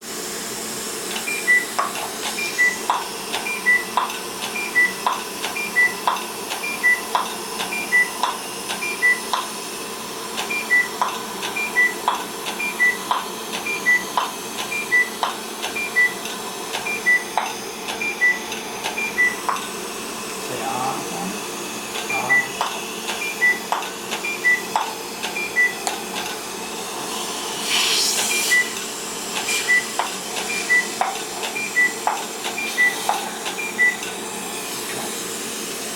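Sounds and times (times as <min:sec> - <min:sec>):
steady hum: 0:00.0 - 0:35.9
dental laser beeps: 0:01.1 - 0:09.5, 0:10.4 - 0:19.7, 0:22.0 - 0:26.1, 0:27.9 - 0:34.2
burst of hiss: 0:27.5 - 0:28.5.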